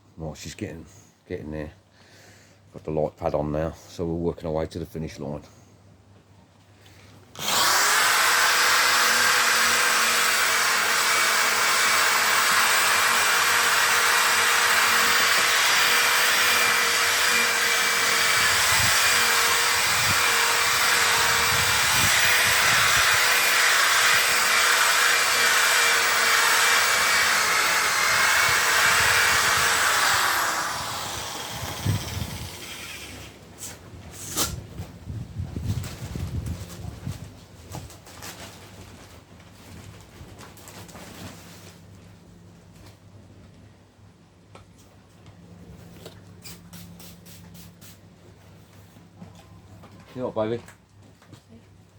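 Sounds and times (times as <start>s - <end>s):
electric polisher whining: 7.4s - 33.2s.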